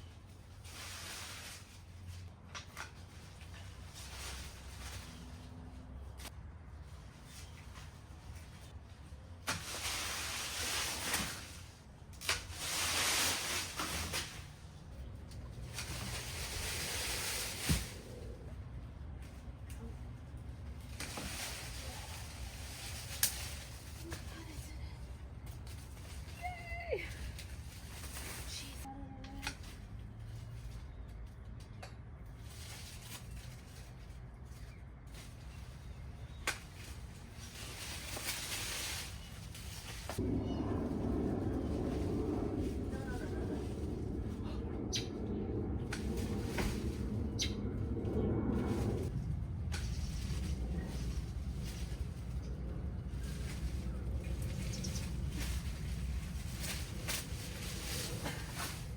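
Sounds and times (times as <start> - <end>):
leafy branches rustling: 0.0 - 58.9
low background rumble: 0.0 - 58.9
low steady hum: 34.2 - 58.9.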